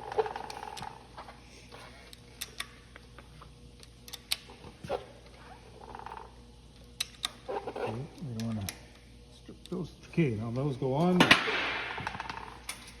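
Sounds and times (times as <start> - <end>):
tools clicking and tapping: 2.1 - 3.2, 6.8 - 7.4.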